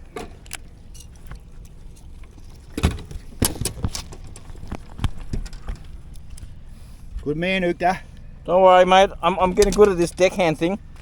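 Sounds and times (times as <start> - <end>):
low steady rumble: 0.0 - 11.0
knocks and clatters: 2.2 - 6.5.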